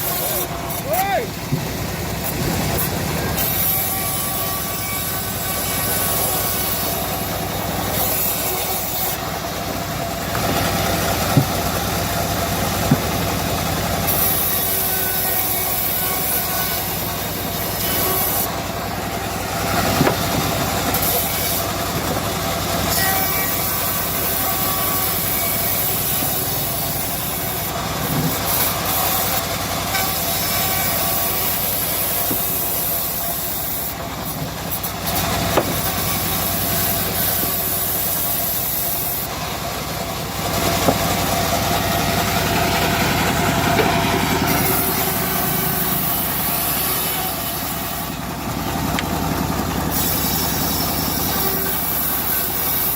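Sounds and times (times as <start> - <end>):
bandsaw mill drone: 0.0 - 52.9
sharp knocks: 1.5 - 1.8, 10.3 - 11.8, 12.8 - 13.3, 19.8 - 20.8, 35.5 - 35.9, 40.7 - 41.3
blade hissing through log: 2.2 - 18.6, 19.2 - 22.2, 22.8 - 48.2, 49.9 - 52.9.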